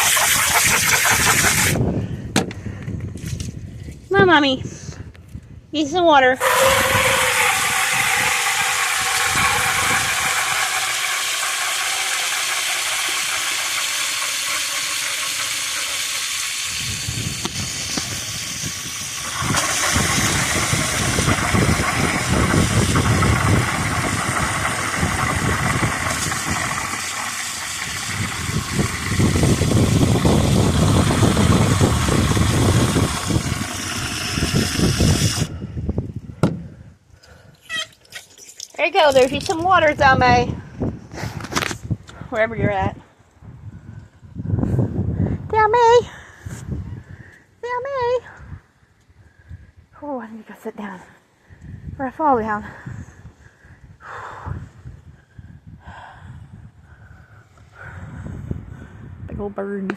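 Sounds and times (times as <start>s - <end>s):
wind buffeting microphone: 0.0s - 11.8s, 16.6s - 37.6s, 38.8s - 50.0s, 51.4s - 59.9s.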